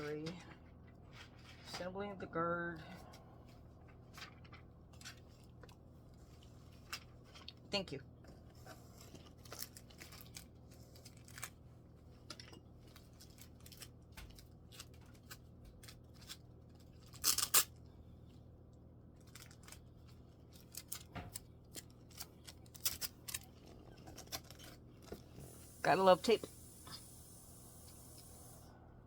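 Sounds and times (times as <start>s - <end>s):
packaging rustling: 8.9s - 17.7s, 19.2s - 25.4s.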